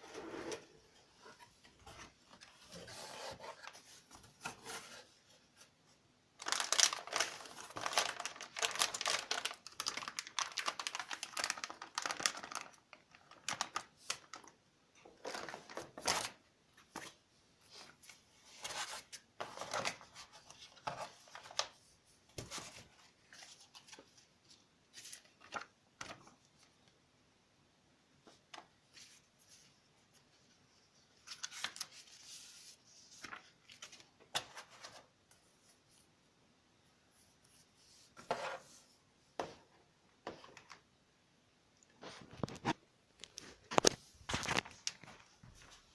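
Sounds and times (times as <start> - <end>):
packaging crinkling: 6.4 - 14.5.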